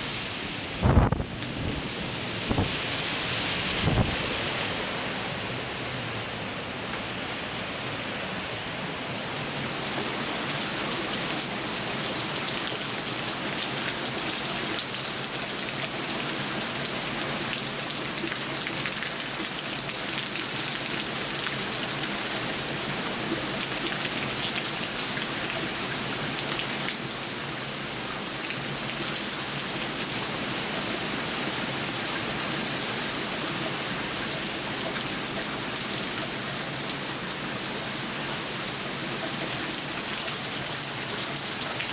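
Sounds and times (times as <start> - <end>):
heavy rain pouring: 0.0 - 41.9.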